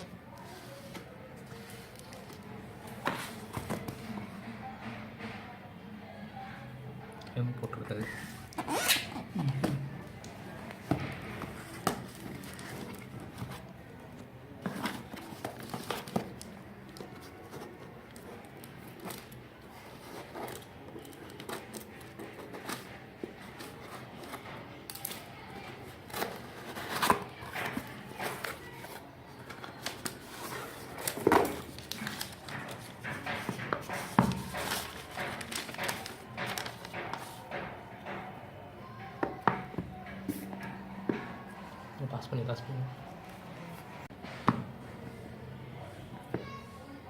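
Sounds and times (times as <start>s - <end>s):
packaging being opened by hand: 26.1s - 33.0s, 33.8s - 37.3s.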